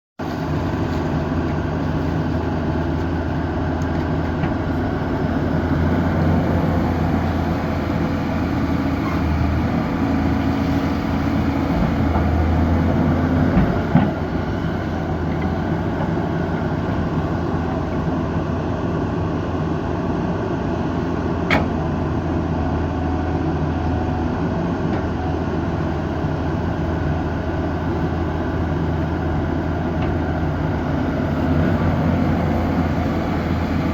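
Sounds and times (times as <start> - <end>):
excavator diesel engine running: 0.2 - 33.9.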